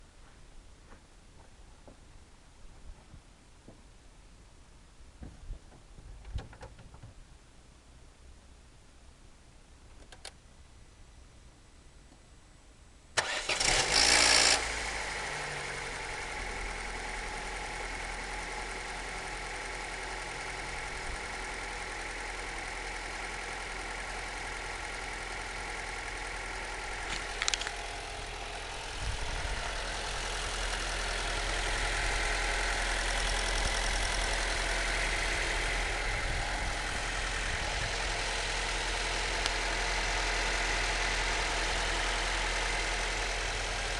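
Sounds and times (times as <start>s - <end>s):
car engine cranking and catching: 13.2s - 43.9s
car engine idling: 14.6s - 43.9s.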